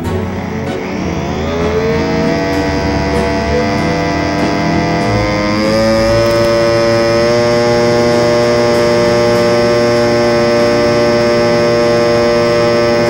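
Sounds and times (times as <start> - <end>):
model airplane motor and propeller: 0.0 - 13.0.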